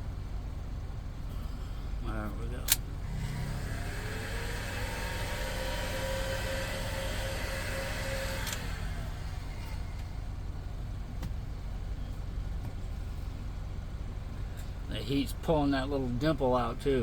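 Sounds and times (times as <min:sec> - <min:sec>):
heat gun fan whine: 0:02.7 - 0:10.3.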